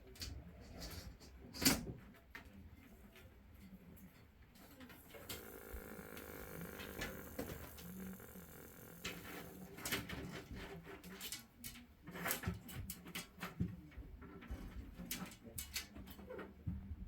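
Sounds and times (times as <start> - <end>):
snake tail rattling in bedding: 5.0 - 9.8.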